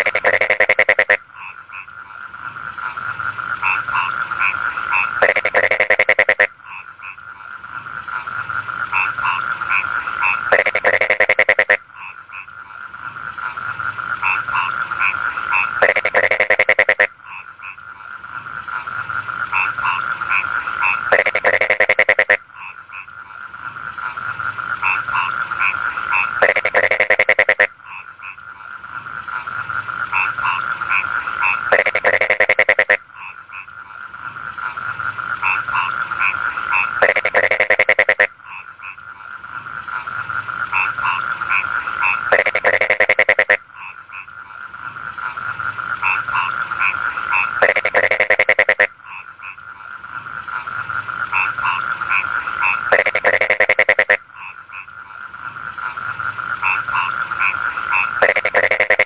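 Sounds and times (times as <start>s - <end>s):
frog chorus croaking: 0.0s - 59.0s
rapid pulsed frog croaks: 0.0s - 59.0s.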